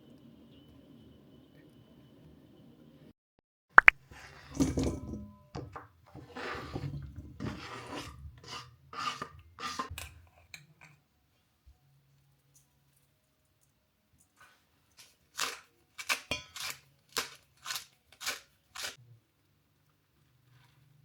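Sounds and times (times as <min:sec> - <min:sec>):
objects clattering and rustling: 0:04.1 - 0:08.4.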